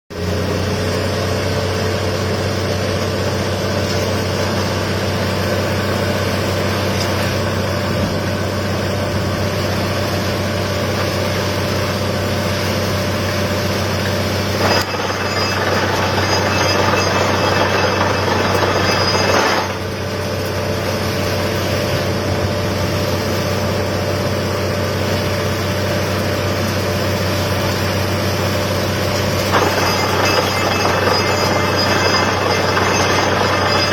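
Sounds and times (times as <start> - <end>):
drilling rig engine hum: 0.3 - 33.9
harsh loud drilling noise: 29.6 - 33.9.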